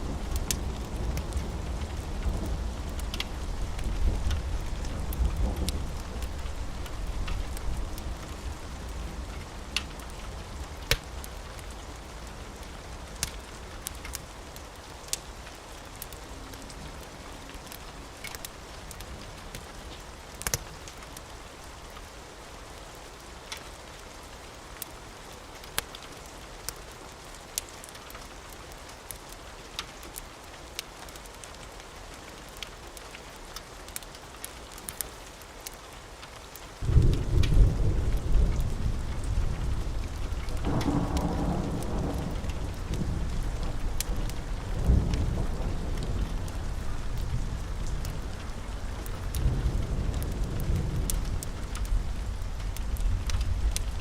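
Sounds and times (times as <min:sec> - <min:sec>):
steady rain: 0:00.0 - 0:54.0
deep roll of thunder: 0:36.8 - 0:54.0.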